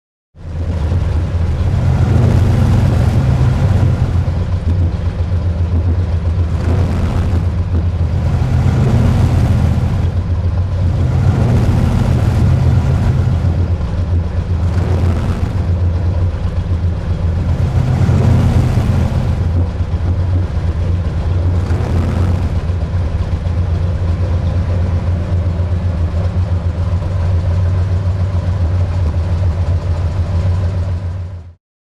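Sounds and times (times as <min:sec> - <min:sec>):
car engine idling and revving: 0:00.4 - 0:31.6.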